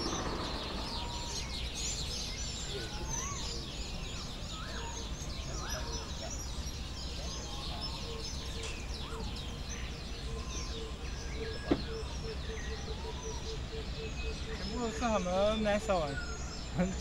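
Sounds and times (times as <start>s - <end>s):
steady low rumble: 0.0s - 2.8s
bird whistles rising and falling: 0.0s - 6.3s
birds chirping and trilling: 0.0s - 17.0s.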